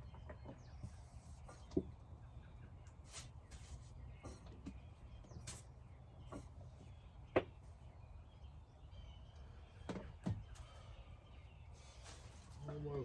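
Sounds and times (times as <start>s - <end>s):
descending bird calls: 4.1s - 13.0s.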